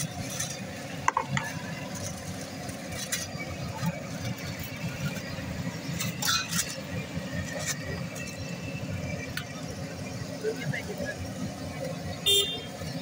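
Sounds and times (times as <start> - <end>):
low rumble of traffic: 0.0 - 13.0.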